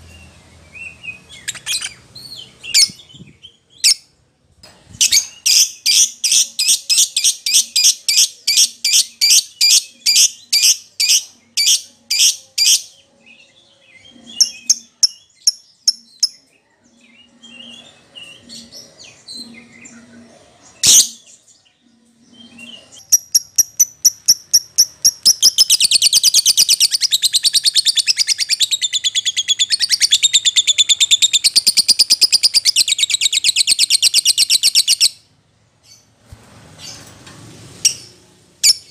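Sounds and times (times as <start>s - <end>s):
lovebird chirping and trilling: 0.1s - 4.0s, 5.0s - 12.9s, 22.4s - 35.2s, 37.8s - 38.9s.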